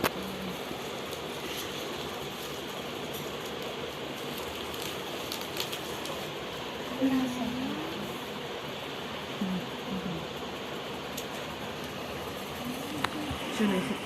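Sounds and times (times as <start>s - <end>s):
room hiss: 0.0s - 14.0s.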